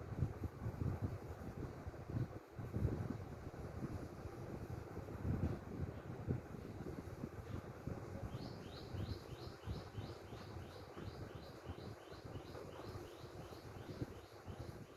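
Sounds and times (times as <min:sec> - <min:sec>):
bird chirping: 0:08.3 - 0:14.9.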